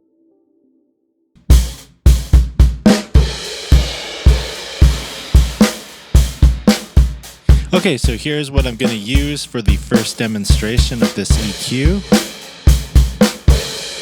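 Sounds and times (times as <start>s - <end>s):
kick drum: 1.4s - 3.4s
hi-hat and cymbals: 1.5s - 14.0s.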